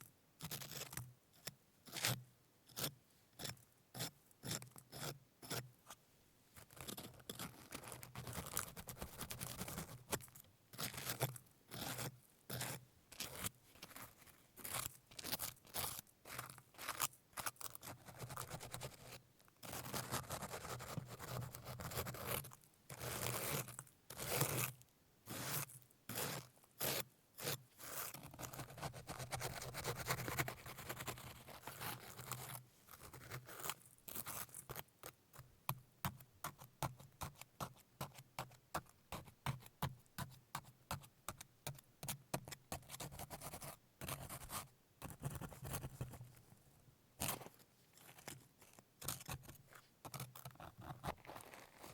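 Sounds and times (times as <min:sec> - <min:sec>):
salt crust crunching and scraping: 0:50.8 - 0:51.9.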